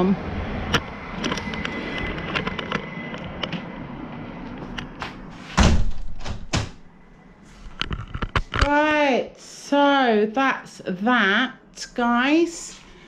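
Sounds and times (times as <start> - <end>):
heavy thud: 5.6 - 6.9.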